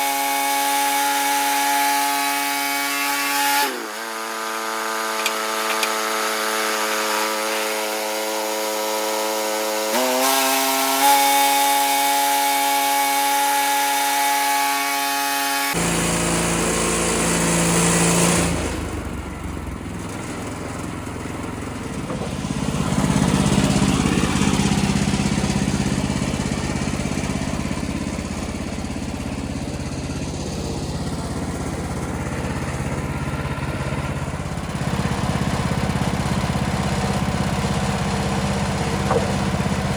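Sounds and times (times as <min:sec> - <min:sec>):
band sawmill drone: 0:00.0 - 0:39.9
rough low engine running: 0:05.0 - 0:09.6, 0:15.8 - 0:39.9.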